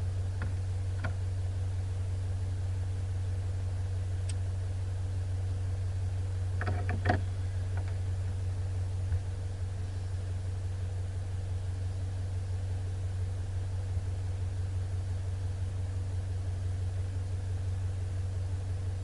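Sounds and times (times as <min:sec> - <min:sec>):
vehicle engine droning: 0:00.0 - 0:19.0
knocks and rattles: 0:06.6 - 0:08.0.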